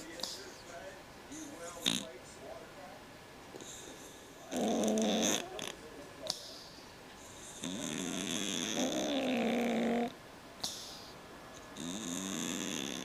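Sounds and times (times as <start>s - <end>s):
cat snoring: 1.8s - 2.1s, 4.4s - 5.8s, 7.4s - 10.9s, 11.8s - 13.0s.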